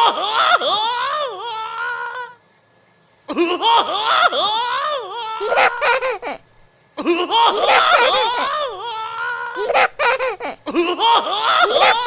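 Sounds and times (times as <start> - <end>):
high-pitched laughter: 3.5 - 6.4, 7.1 - 12.0.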